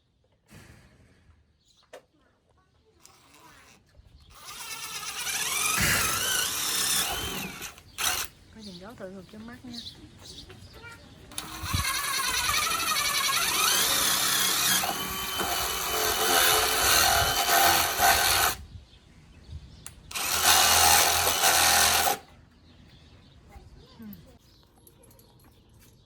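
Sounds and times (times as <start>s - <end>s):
power drill running: 4.3s - 8.3s, 11.3s - 18.6s, 20.1s - 22.2s.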